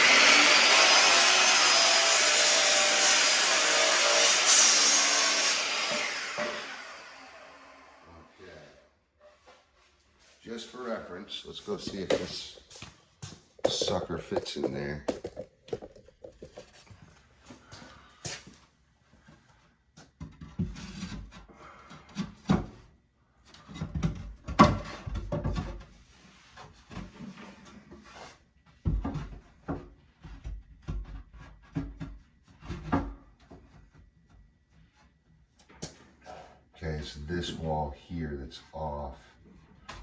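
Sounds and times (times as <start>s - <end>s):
board knocking and scraping: 13.6s - 16.9s, 23.7s - 25.9s, 28.8s - 34.0s.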